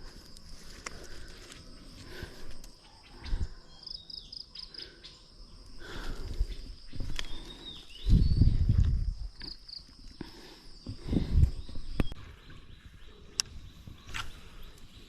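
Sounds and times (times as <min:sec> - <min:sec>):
high insect drone: 0:00.0 - 0:15.0
bird chirps: 0:02.8 - 0:05.8, 0:06.4 - 0:15.0.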